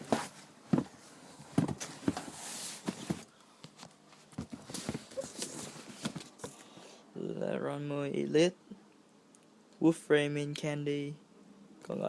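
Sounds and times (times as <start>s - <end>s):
paper rustling: 1.8s - 6.6s.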